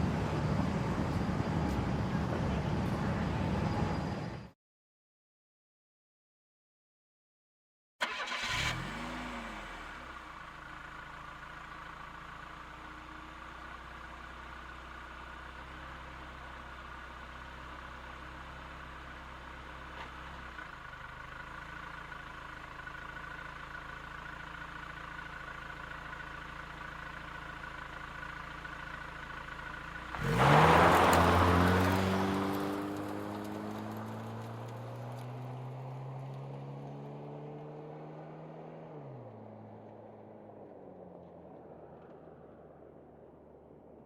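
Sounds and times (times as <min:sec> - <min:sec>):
car engine starting and idling: 0:00.0 - 0:04.4, 0:08.0 - 0:44.0
loud engine sound: 0:00.0 - 0:04.5.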